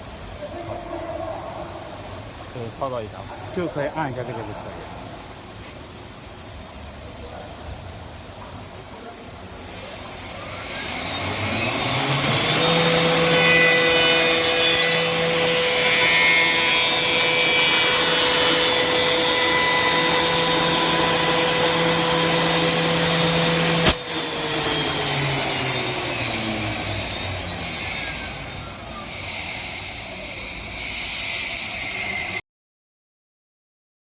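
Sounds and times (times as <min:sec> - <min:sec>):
machine cutter spindle whining: 0:09.6 - 0:32.4.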